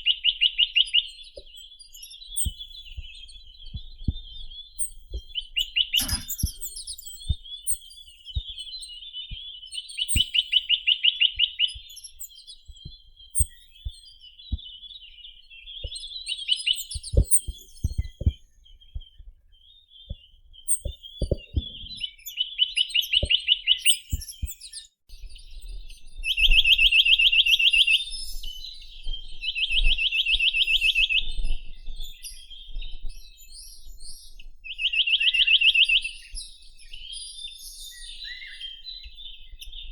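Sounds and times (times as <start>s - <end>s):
bird singing rapid trills: 0.0s - 8.9s
soft bird calls: 0.0s - 39.9s.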